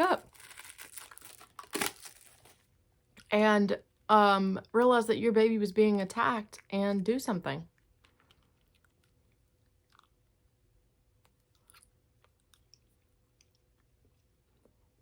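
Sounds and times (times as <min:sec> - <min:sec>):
faint steady hum: 0:00.0 - 0:15.0
chewing mouth clicks: 0:07.8 - 0:10.4, 0:11.2 - 0:14.8.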